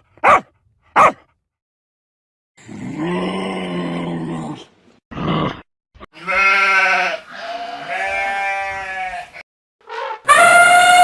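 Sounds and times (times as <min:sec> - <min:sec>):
livestock bleating: 0:06.1 - 0:09.4.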